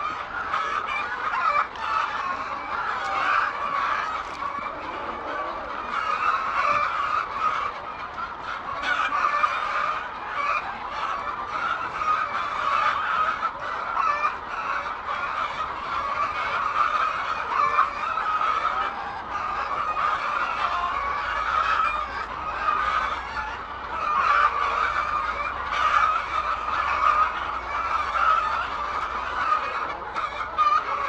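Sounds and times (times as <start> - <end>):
chickens clucking: 0.0 - 31.0.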